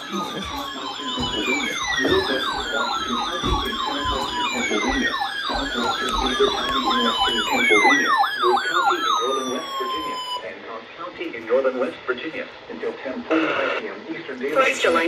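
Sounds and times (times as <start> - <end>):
long falling siren tone: 0.0 - 10.5
siren warble: 0.0 - 10.6
siren yelp: 0.0 - 10.7, 14.5 - 15.0.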